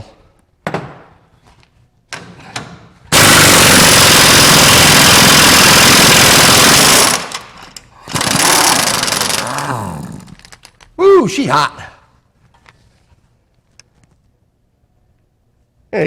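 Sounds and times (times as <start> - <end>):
pneumatic impact wrench hammering: 2.5 - 9.6.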